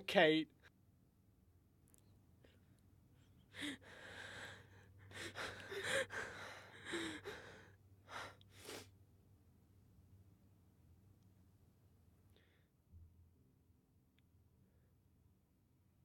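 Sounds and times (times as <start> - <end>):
man gasping and sobbing: 3.5 - 8.4.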